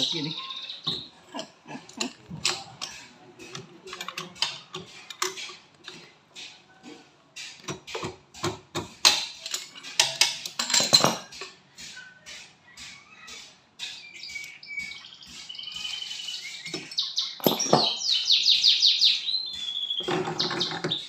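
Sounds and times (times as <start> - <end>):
metal tools clinking and knocking: 0.8 - 6.1, 7.4 - 11.6, 16.7 - 18.0.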